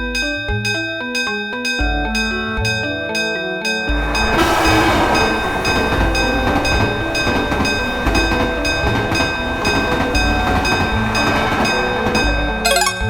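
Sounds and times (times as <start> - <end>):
short high pips: 12.7 - 13.0
steady high tone: 12.7 - 13.0.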